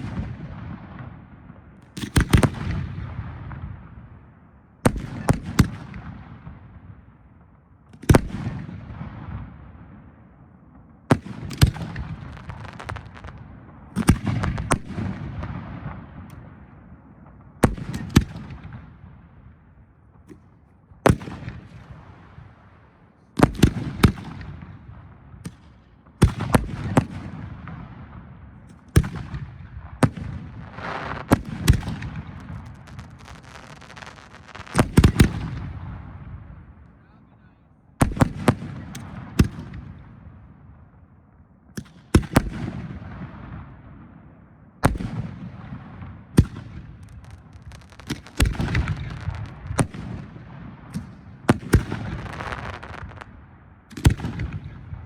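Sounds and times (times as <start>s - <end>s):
rumble after fireworks: 0.0s - 55.0s
firework shells bursting: 30.6s - 35.6s.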